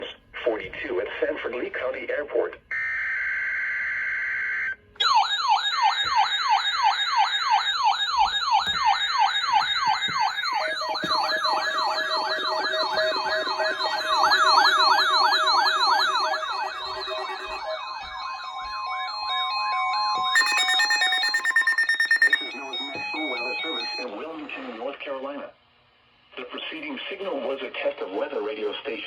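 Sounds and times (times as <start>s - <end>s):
warbling siren alarms: 2.8s - 24.1s
steady electronic tones: 5.0s - 24.1s.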